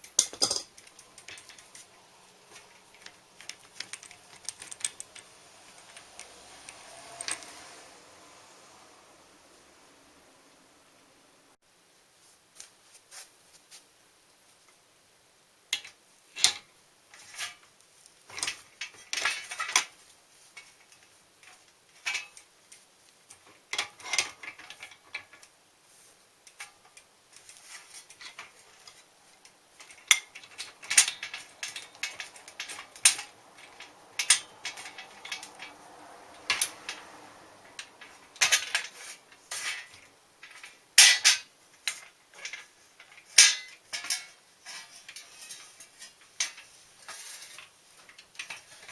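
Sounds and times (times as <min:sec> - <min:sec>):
tools and metal parts clinking: 0:00.0 - 0:01.9, 0:02.5 - 0:07.8, 0:18.3 - 0:20.0, 0:20.6 - 0:25.5, 0:26.5 - 0:48.9.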